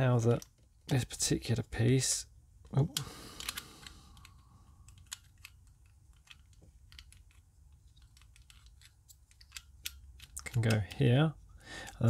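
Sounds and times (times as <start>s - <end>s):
plastic puzzle cube pieces clicking: 3.0s - 11.1s.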